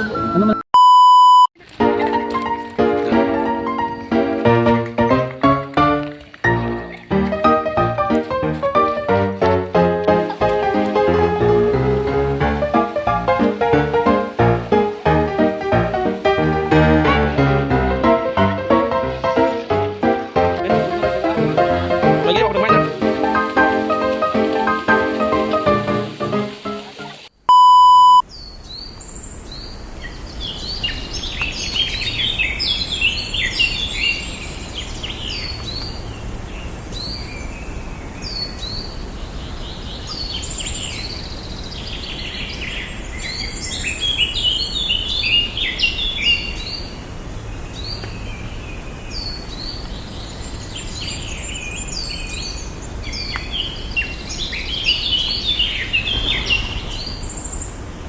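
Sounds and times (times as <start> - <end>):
loud steady beep: 0.0 - 1.5, 27.5 - 28.2
many birds chirping: 2.0 - 27.3, 28.3 - 58.0.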